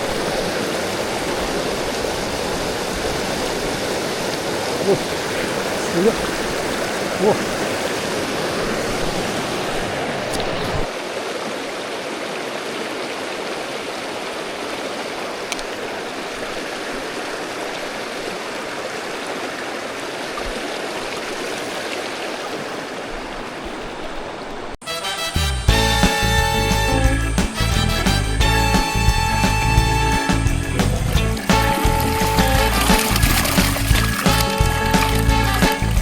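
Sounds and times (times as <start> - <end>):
river water rushing: 0.0 - 25.3, 25.9 - 36.0
music: 24.8 - 36.0.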